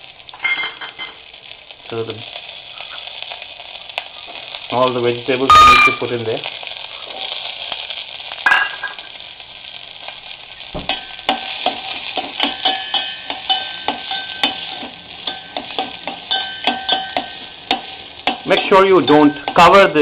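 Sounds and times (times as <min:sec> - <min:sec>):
vegetables sizzling in a pan: 0:00.0 - 0:20.0
spatula scraping and tapping pan: 0:10.9 - 0:19.9.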